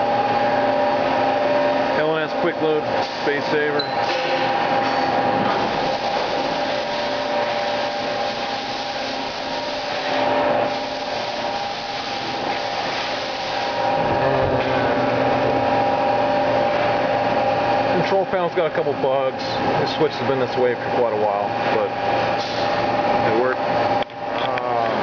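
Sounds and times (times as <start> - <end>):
machine two-note whine: 13.9 - 16.6.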